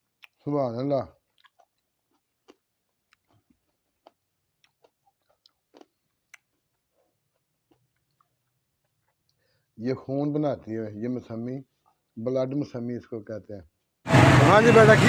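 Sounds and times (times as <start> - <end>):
faint wet chewing clicks: 0.0 - 0.5, 1.1 - 9.6.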